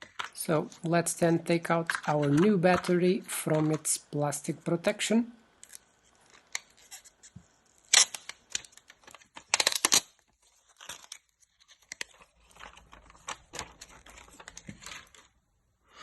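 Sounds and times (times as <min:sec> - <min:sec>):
plastic packaging crinkling and tearing: 0:05.6 - 0:15.4.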